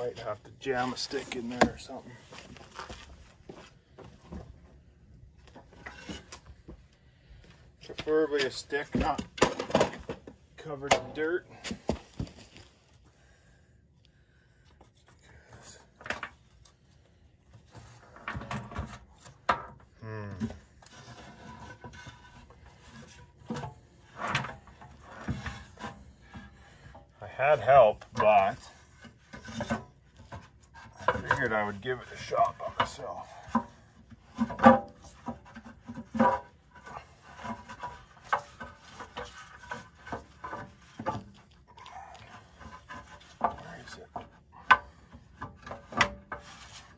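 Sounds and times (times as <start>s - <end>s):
light scraping and rubbing: 0.0s - 3.7s, 5.4s - 6.8s, 20.5s - 46.9s.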